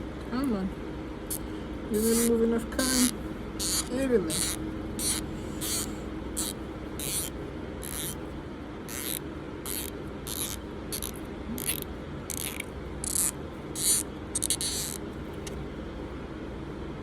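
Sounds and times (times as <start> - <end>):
cotton swab scraping metal case: 2.0 - 8.2, 8.9 - 15.5.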